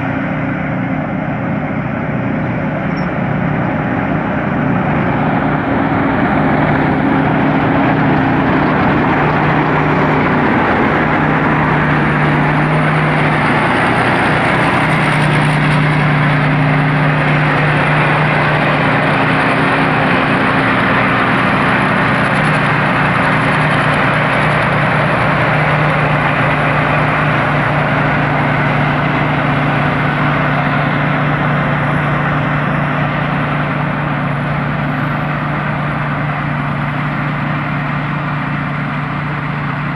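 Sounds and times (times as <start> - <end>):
combine harvester running: 0.0 - 39.9
faint high whine: 2.8 - 3.4.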